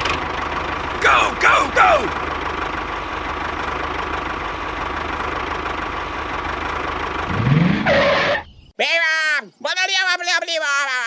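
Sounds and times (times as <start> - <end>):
small engine idling: 0.0 - 7.8.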